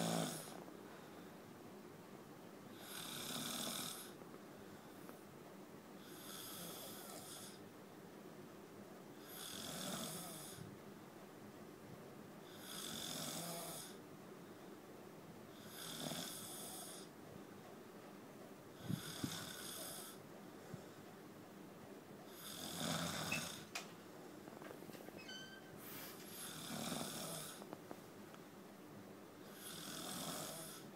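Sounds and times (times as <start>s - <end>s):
heavy snoring: 0.0s - 0.6s, 2.7s - 4.2s, 6.0s - 7.6s, 9.2s - 10.6s, 12.5s - 14.0s, 15.6s - 17.1s, 18.8s - 20.2s, 22.3s - 23.7s, 26.3s - 27.6s, 29.5s - 30.9s.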